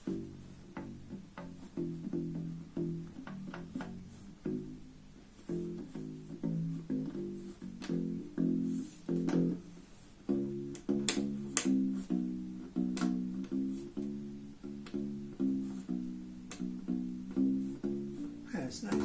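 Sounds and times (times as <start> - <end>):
bass ukulele plucked notes: 0.0 - 9.7, 10.3 - 19.0
finger clicking on string: 5.5 - 9.6, 10.3 - 19.0.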